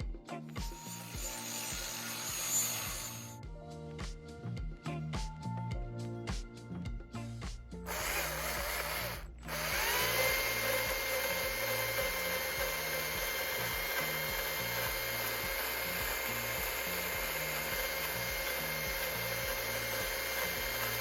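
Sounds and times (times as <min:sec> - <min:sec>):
background music with a beat: 0:00.0 - 0:21.0
power tool running: 0:00.6 - 0:03.4, 0:07.9 - 0:21.0.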